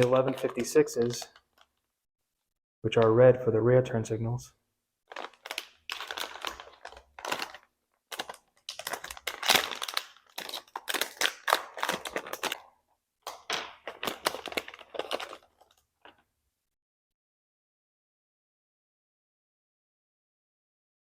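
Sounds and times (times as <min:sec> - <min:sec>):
plastic packaging crinkling: 0:00.0 - 0:01.9, 0:05.1 - 0:16.3.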